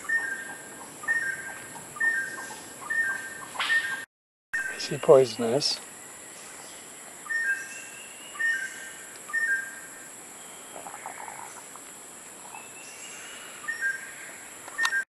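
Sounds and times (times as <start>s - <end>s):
steady high-pitched hiss: 4.6s - 15.0s
bird whistling two-note calls: 14.8s - 15.0s.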